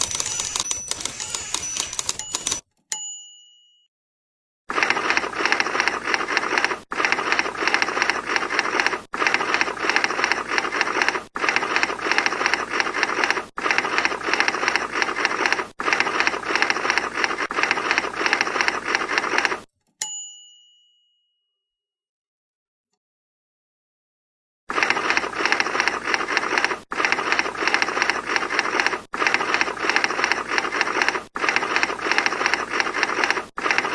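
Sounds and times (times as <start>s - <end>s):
typewriter keys clacking: 0.0s - 2.7s
typewriter bell ding: 0.0s - 3.9s, 20.0s - 21.4s.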